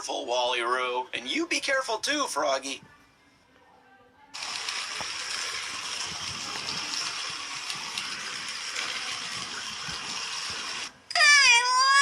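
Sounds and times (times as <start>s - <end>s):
toy motor whirring: 4.4s - 11.0s.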